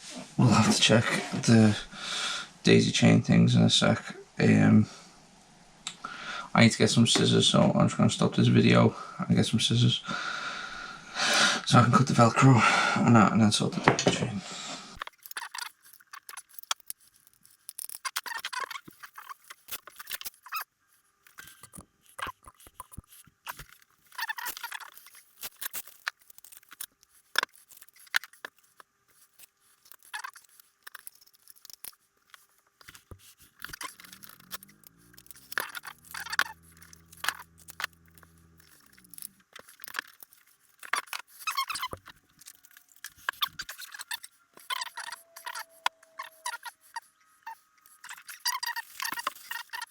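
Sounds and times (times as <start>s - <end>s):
hands handling pedals and cables: 15.0s - 49.9s.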